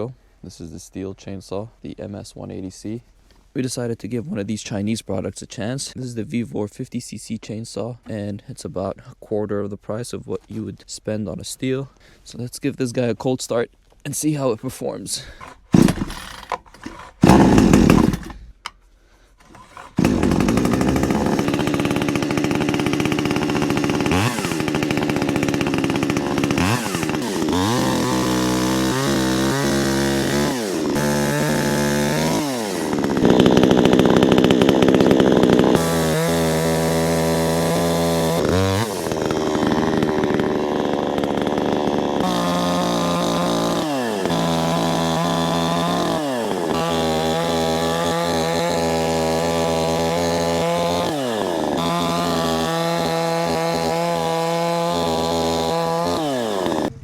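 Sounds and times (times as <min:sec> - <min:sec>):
chainsaw engine revving: 0:15.2 - 0:18.6, 0:19.4 - 0:57.0
chainsaw pull cord starting: 0:15.2 - 0:18.8, 0:19.4 - 0:57.0.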